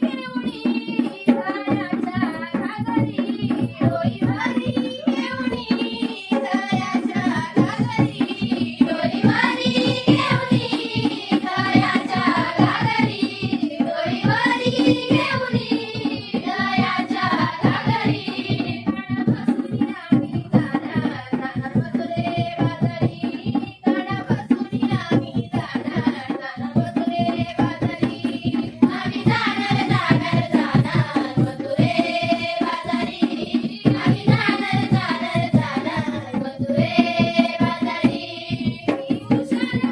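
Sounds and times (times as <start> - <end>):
hand drum rhythm: 0.0 - 39.9
person singing folk song: 0.0 - 39.9.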